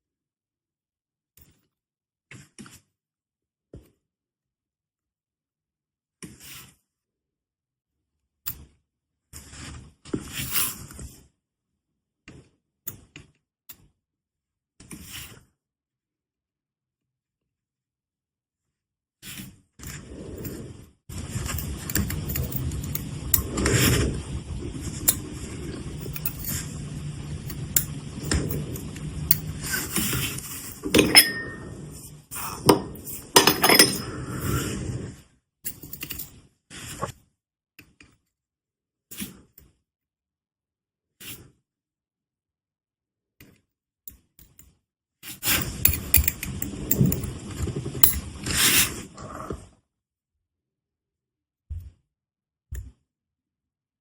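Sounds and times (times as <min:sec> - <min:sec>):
low steady hum: 0:21.6 - 0:34.1
metal tools clicking on workbench: 0:30.9 - 0:31.7, 0:32.7 - 0:34.1.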